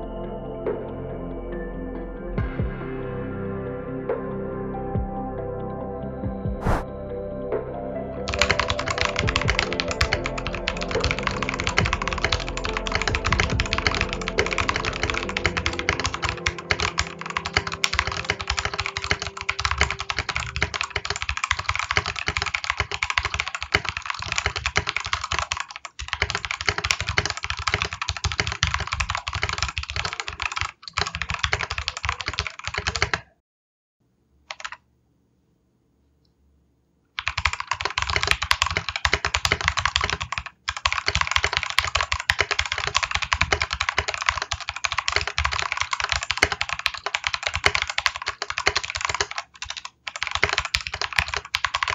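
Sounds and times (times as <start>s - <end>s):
typing on mechanical keyboard: 8.3s - 33.3s, 34.5s - 34.8s, 37.2s - 51.9s.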